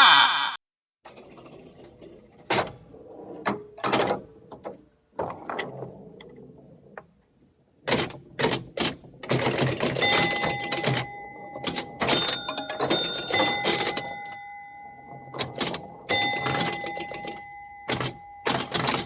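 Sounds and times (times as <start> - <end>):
cartoon hits and swishes: 0.0 - 0.6
steady electronic tones: 0.0 - 0.6.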